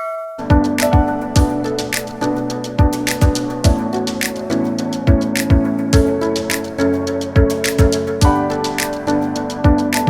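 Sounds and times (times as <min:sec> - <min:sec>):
kick drum: 0:00.5 - 0:01.6, 0:02.8 - 0:03.9, 0:05.1 - 0:06.2, 0:07.4 - 0:08.4
hi-hats: 0:00.5 - 0:10.0.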